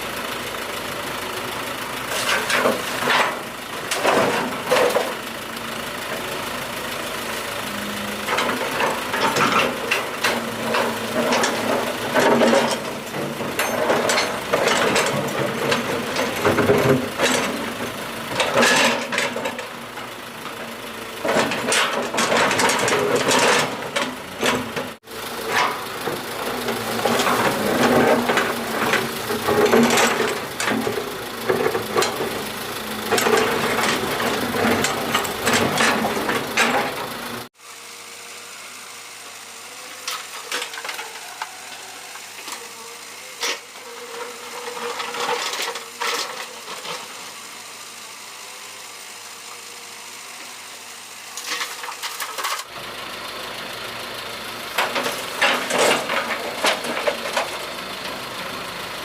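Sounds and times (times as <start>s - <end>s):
excavator diesel engine running: 0.0s - 59.0s
metal clanks and rattles: 8.3s - 19.8s, 21.2s - 37.5s, 54.8s - 58.2s.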